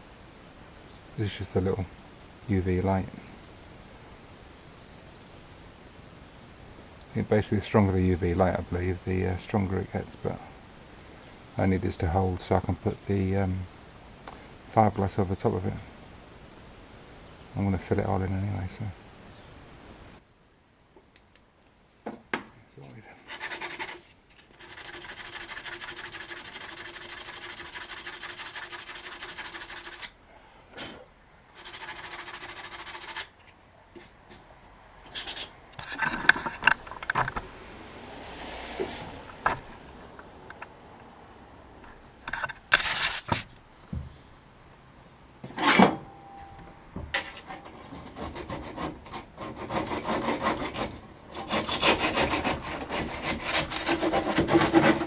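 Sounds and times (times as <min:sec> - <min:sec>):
scrapes on wood: 0:23.2 - 0:30.1, 0:31.6 - 0:36.9, 0:42.3 - 0:43.5, 0:47.7 - 0:55.0
rasping strokes on wood: 0:23.2 - 0:30.2, 0:31.6 - 0:33.3, 0:47.9 - 0:55.0
rubbing on wood: 0:23.2 - 0:30.2, 0:31.6 - 0:36.0, 0:47.8 - 0:55.0.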